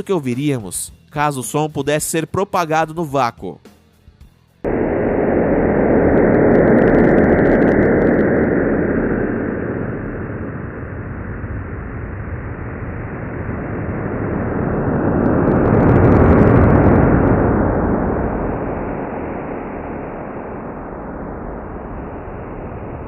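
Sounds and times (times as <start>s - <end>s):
noisy rumbling drone: 4.6s - 23.0s.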